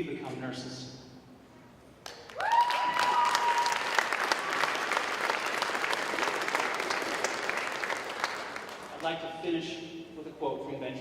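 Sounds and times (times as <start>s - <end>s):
audience clapping: 2.0s - 9.2s
high whooping cheer: 2.3s - 7.0s.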